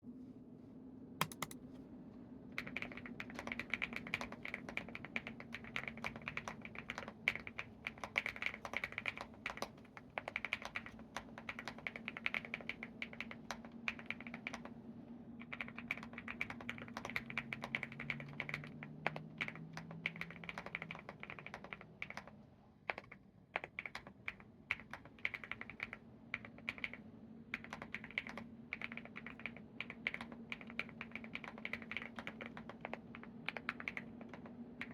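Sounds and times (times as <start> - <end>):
mechanical keyboard typing: 1.2 - 1.6, 2.6 - 14.8, 15.4 - 34.9.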